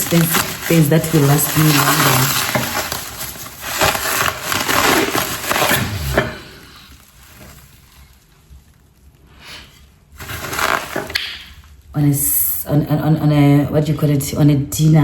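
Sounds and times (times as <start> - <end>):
packing material crinkling: 0.0 - 12.0.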